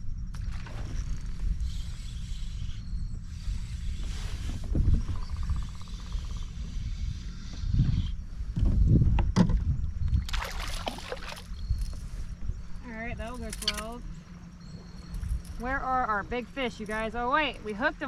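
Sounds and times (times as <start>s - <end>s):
wind on microphone: 0.0s - 18.0s
water splashing: 10.2s - 11.5s.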